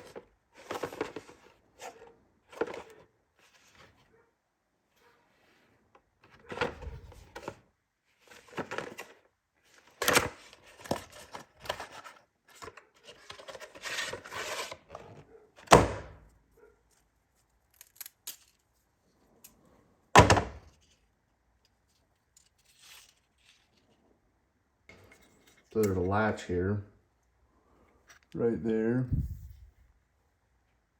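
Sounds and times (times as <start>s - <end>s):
tool handling clicks and clatter: 16.9s - 18.8s, 21.6s - 23.8s, 24.9s - 26.2s.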